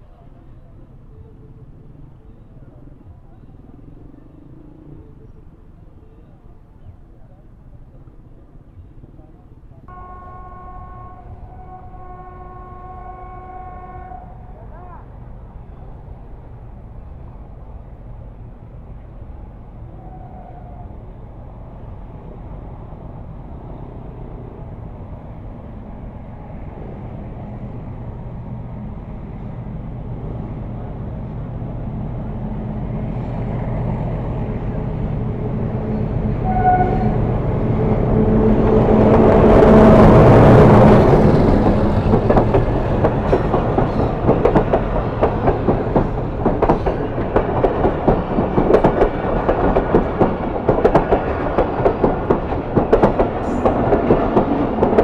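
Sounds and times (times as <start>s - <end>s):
locomotive engine drone: 0.0s - 55.0s
train wheels clattering on rails: 38.5s - 55.0s.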